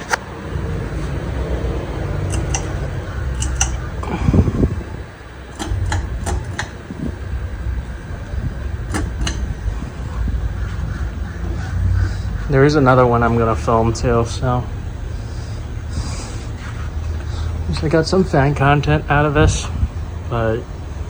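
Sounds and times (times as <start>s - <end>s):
ceiling fan running: 0.0s - 21.0s
steady low rumble: 0.3s - 21.0s
sharp clicks: 2.2s - 4.2s, 5.5s - 7.2s, 8.8s - 9.9s.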